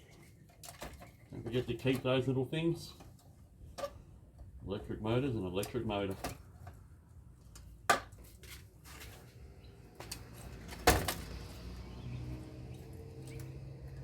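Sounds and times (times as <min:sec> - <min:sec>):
sharp knocks of scrap parts: 0:10.0 - 0:11.5.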